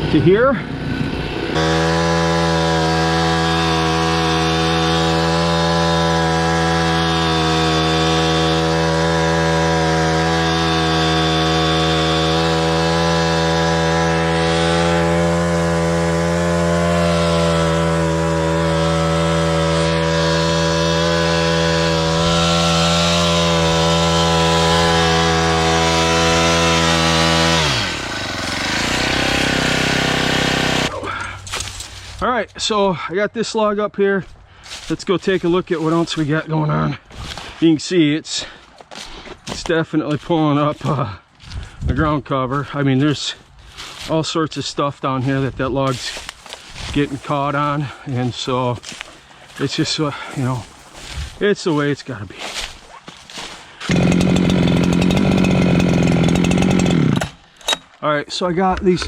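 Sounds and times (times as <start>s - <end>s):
small winch engine running: 0.6s - 31.0s, 53.8s - 57.5s.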